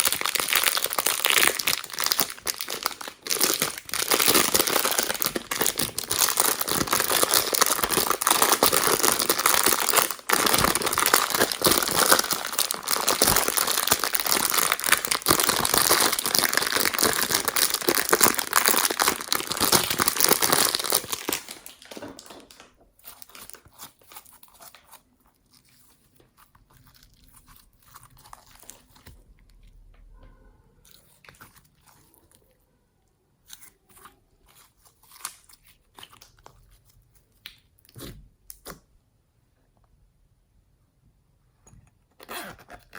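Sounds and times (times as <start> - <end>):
slime squeezed by hand crackling: 0.0 - 29.4.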